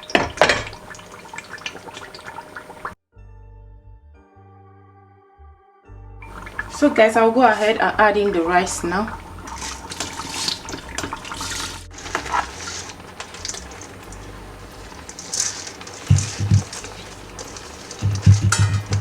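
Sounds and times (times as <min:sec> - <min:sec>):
wet rice pouring into sauce: 0:06.2 - 0:19.0
dull knocks: 0:18.0 - 0:19.0.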